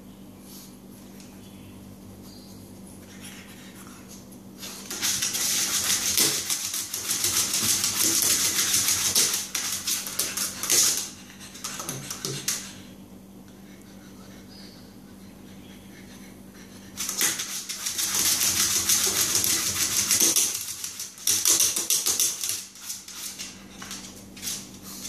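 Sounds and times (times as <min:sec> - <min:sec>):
low steady hum: 0:00.0 - 0:21.3
dog scratching and scrabbling: 0:04.6 - 0:12.8, 0:17.0 - 0:24.7.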